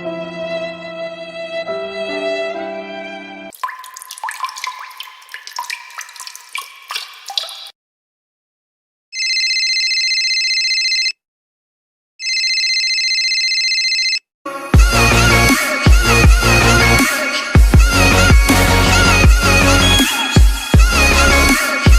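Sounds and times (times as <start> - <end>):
water drops plinking: 3.5 - 7.7.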